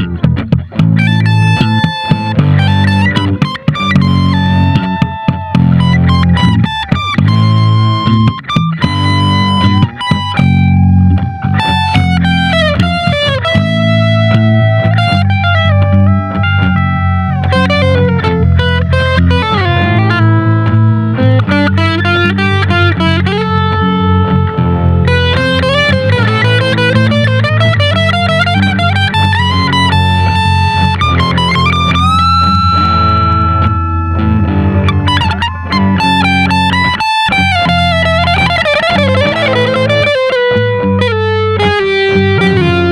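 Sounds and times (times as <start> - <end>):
electric guitar blues solo: 0.0 - 42.9
low backing part: 29.2 - 38.6.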